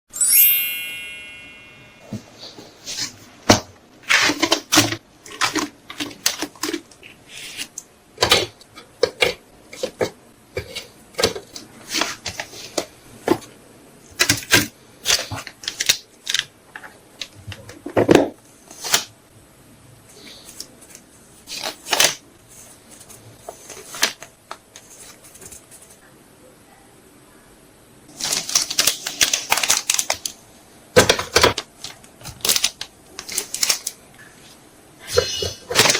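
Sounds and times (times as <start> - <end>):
crinkly wrapping rustles: 28.1 - 30.4, 31.4 - 34.6.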